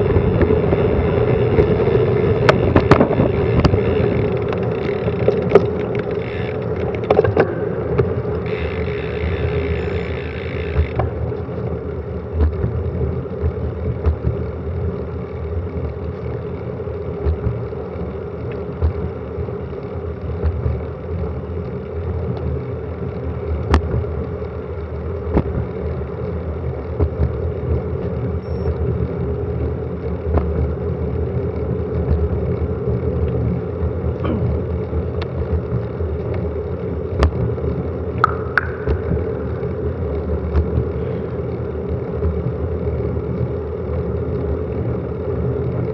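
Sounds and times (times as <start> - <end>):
wind and road rumble: 0.0 - 45.9
sharp clicks and knocks: 2.4 - 9.9, 10.6 - 11.5, 12.4 - 14.5, 17.2 - 17.6, 25.3 - 25.7, 30.3 - 30.6, 38.2 - 40.9.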